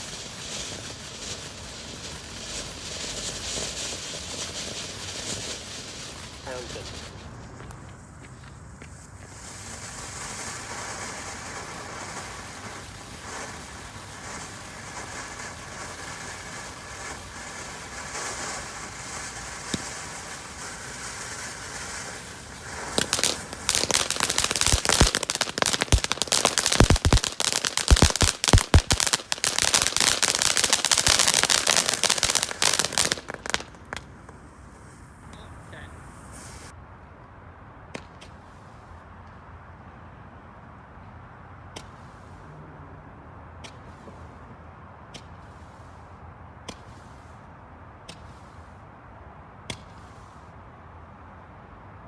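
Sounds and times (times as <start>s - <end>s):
firework crackles and pops: 0.0s - 36.8s, 43.5s - 49.0s, 49.6s - 50.6s
firework hissing: 0.0s - 36.8s.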